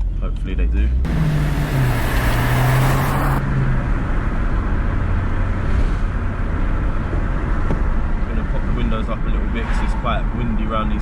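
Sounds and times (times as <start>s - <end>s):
road and wind rumble: 0.0s - 11.0s
car engine running: 1.1s - 5.4s.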